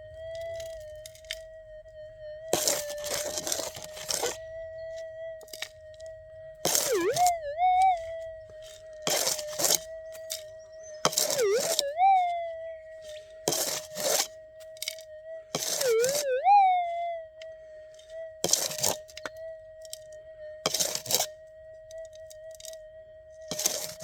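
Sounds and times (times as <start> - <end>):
detector tone rising in pitch: 0.0 - 24.0
metal detector threshold hum: 0.0 - 24.0
gravelly soil scooped and shaken: 2.5 - 4.4, 6.6 - 7.4, 8.6 - 10.4, 11.0 - 11.9, 13.0 - 16.2, 18.4 - 19.2, 20.7 - 21.3, 23.5 - 24.0.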